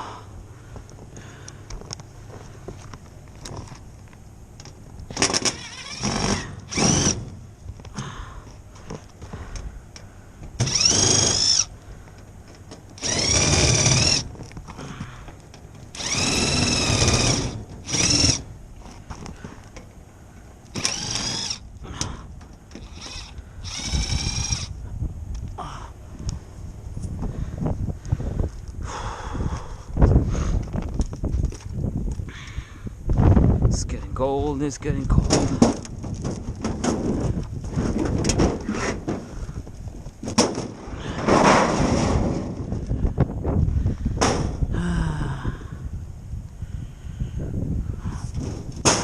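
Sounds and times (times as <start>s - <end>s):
cordless drill running: 5.1s - 7.3s, 10.6s - 11.7s, 13.0s - 14.3s, 15.9s - 18.5s, 20.7s - 22.1s, 22.7s - 24.7s.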